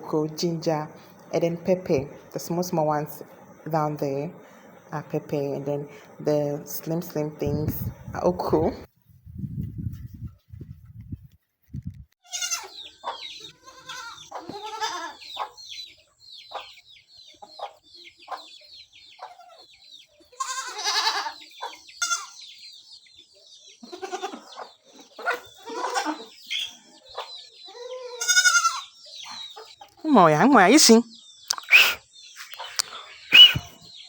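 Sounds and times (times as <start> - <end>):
goats bleating: 12.3 - 12.7, 13.6 - 15.2, 20.4 - 21.4, 22.0 - 22.4, 23.8 - 24.5, 25.6 - 26.3, 27.8 - 28.9
chickens clucking: 12.4 - 34.0.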